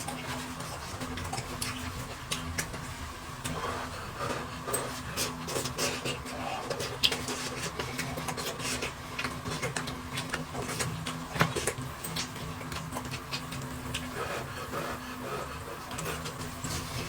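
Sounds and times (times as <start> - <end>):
chewing and lip smacks: 5.4 - 14.1.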